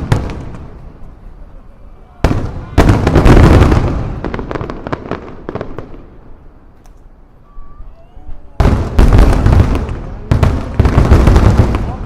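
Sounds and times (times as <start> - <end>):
firework booms: 0.0 - 1.1, 2.2 - 6.4, 8.4 - 12.0
firework crackling: 0.0 - 12.0.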